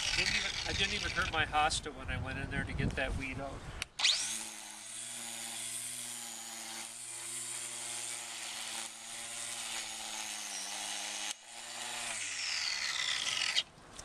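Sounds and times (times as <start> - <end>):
string trimmer running: 0.0 - 1.4, 4.0 - 13.6.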